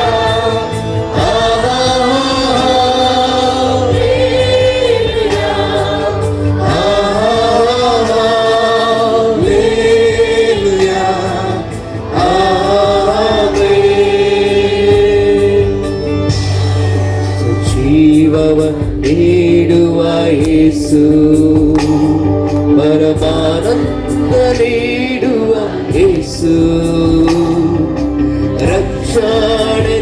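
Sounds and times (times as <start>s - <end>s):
choir singing worship song: 0.0s - 30.0s
musical accompaniment: 0.0s - 30.0s.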